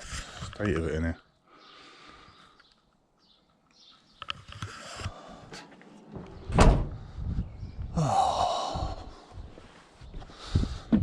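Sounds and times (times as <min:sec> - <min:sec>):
van door slamming: 0:06.1 - 0:07.2
door latch clicks and knocks: 0:06.2 - 0:07.0.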